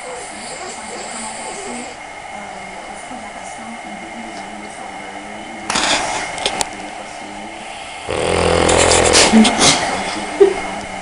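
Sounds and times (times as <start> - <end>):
background hiss: 7.3 - 10.3
noisy breath: 7.5 - 10.4
pet snoring: 8.0 - 9.8.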